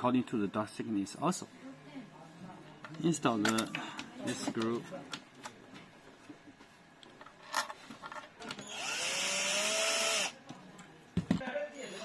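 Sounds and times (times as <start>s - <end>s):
electric screwdriver whine: 8.6s - 10.4s.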